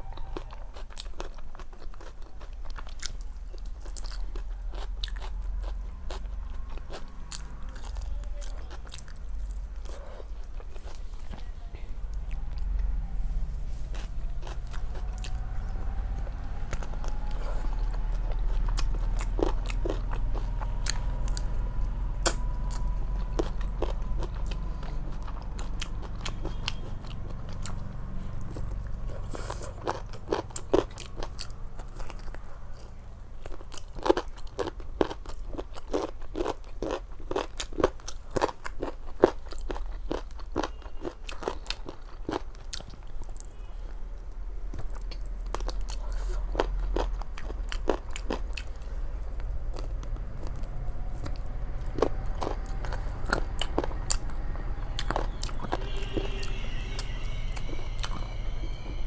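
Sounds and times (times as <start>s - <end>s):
person chewing and crunching: 0.0s - 11.5s, 12.1s - 59.0s
wet mouth clicks: 22.2s - 22.4s.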